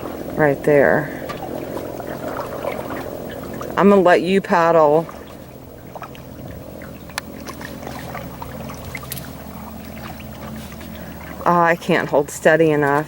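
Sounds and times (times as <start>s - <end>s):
low steady hum: 0.0s - 13.0s
paddle water dripping and swishing: 0.0s - 13.0s.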